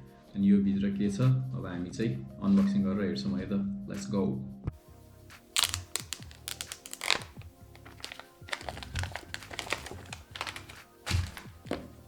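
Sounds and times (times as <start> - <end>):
quiet background music: 0.0 - 12.0
box being unwrapped and opened: 5.6 - 12.0.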